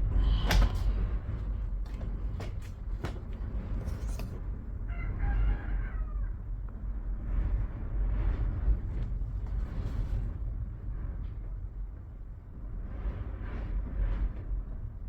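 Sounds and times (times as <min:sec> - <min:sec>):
steady low rumble: 0:00.0 - 0:15.0
rooster crowing: 0:04.9 - 0:06.4.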